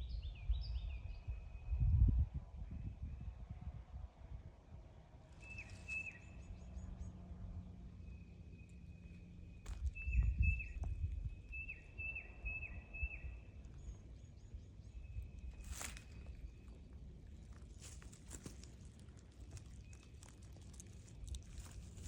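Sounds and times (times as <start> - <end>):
forest bird calling: 5.4 - 6.9, 9.6 - 16.7.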